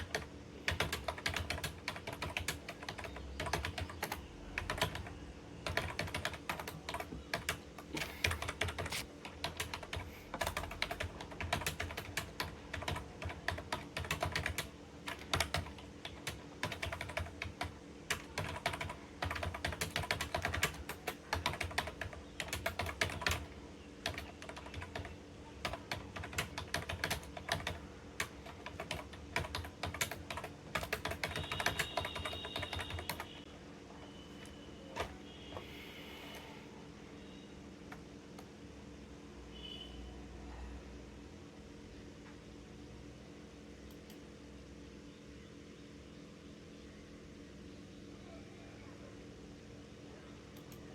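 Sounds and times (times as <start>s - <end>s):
fast typing on keyboard: 0.0s - 33.4s
steady low hum: 0.0s - 50.9s.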